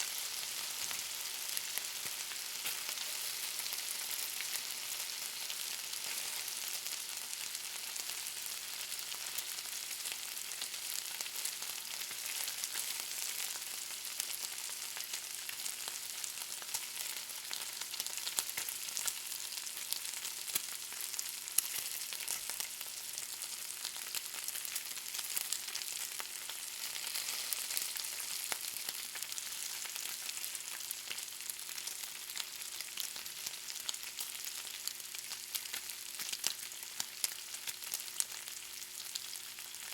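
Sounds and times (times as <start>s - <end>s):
bacon sizzling and popping: 0.0s - 39.9s.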